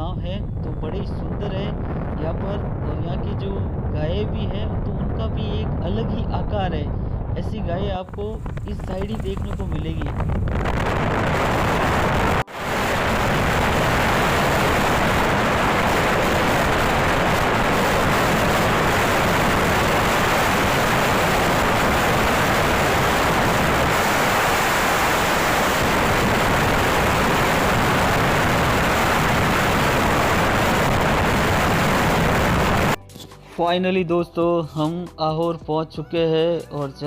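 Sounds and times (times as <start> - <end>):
rushing wind: 0.0 - 33.0.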